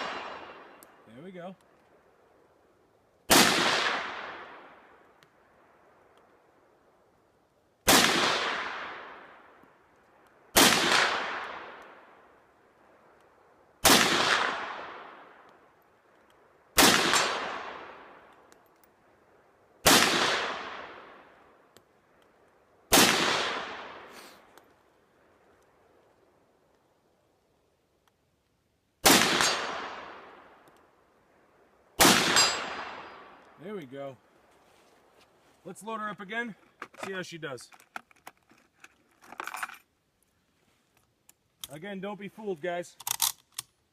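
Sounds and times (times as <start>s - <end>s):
rifle shots: 0.0s - 0.8s, 3.3s - 5.0s, 7.8s - 9.5s, 10.5s - 12.1s, 13.8s - 15.4s, 16.8s - 18.3s, 19.8s - 21.3s, 22.9s - 24.2s, 29.0s - 30.6s, 32.0s - 33.4s.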